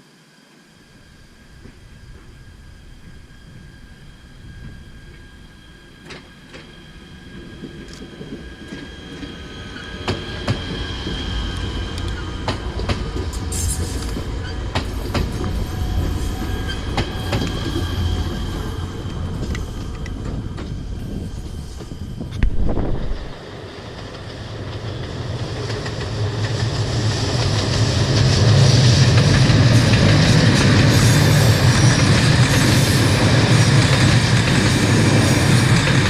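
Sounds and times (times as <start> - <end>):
train low rumble: 0.3 - 36.0
train wheels clicking over rail joints: 7.4 - 36.0.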